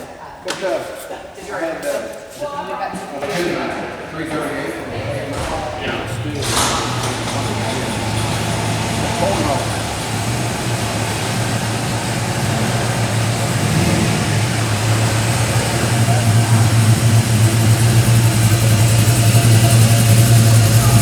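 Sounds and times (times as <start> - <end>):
vehicle engine humming: 4.3 - 21.0.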